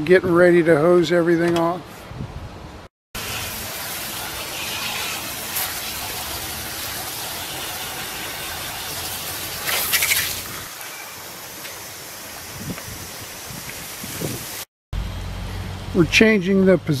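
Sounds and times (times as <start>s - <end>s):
hose spraying water on metal: 3.2s - 14.7s.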